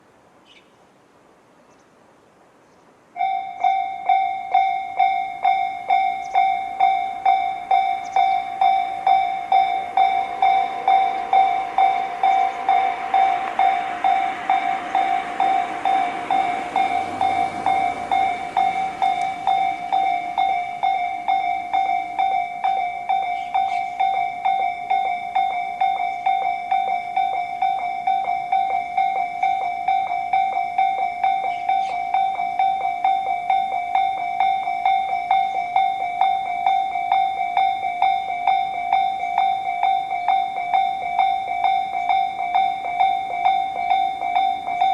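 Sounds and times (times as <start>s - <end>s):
level-crossing alarm bells: 3.2s - 44.9s
broad rushing noise: 6.4s - 30.7s.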